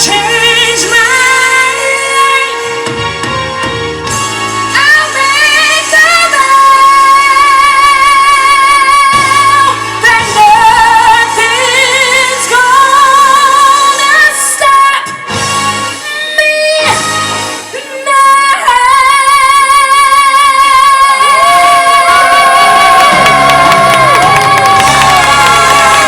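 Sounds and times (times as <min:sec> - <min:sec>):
woman singing with vibrato: 0:00.0 - 0:03.0, 0:04.7 - 0:26.0
instrumental accompaniment: 0:00.0 - 0:17.8.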